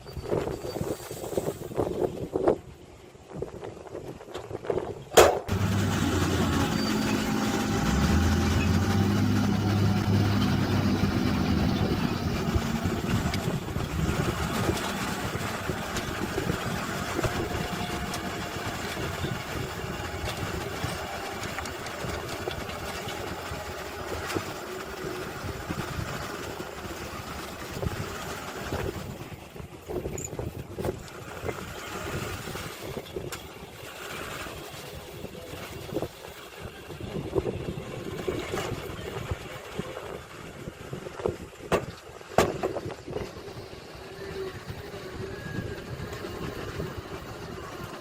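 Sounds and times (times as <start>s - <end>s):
heavy machinery diesel engine running: 5.5s - 29.8s, 42.2s - 48.0s.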